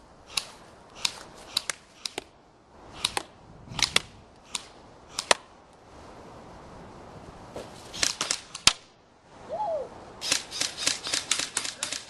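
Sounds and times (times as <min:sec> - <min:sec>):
airsoft rifles firing: 0:10.2 - 0:12.0.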